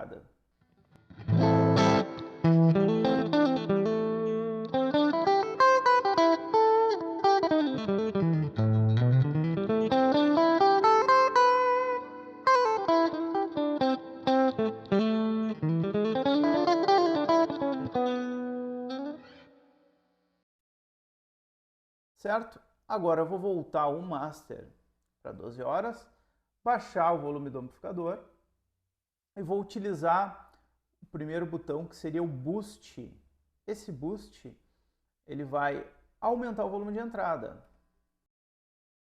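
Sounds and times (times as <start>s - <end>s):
electric guitar riff: 1.1s - 19.8s.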